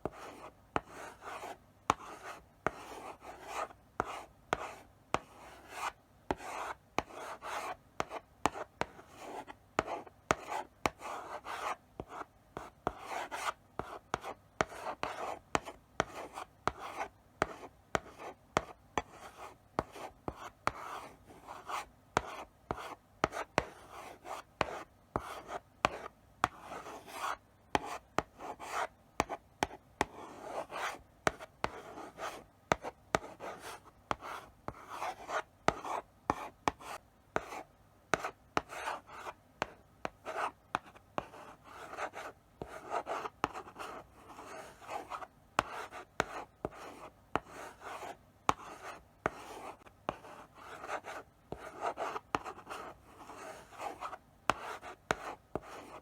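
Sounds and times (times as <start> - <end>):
chalk tapping on board: 24.4 - 56.0.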